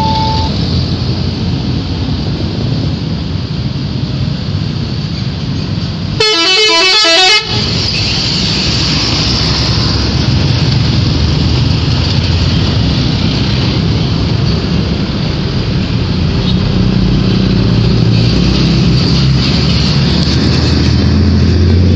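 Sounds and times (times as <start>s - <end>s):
vehicle engine and road noise: 0.0s - 21.9s
musical bus horn: 6.2s - 7.8s.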